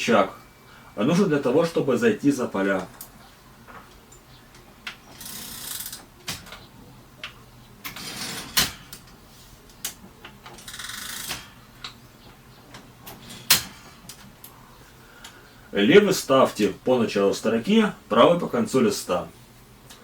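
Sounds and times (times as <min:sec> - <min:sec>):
typewriter carriage sliding: 0:05.1 - 0:06.7, 0:07.8 - 0:09.1, 0:10.5 - 0:11.6, 0:13.1 - 0:14.0.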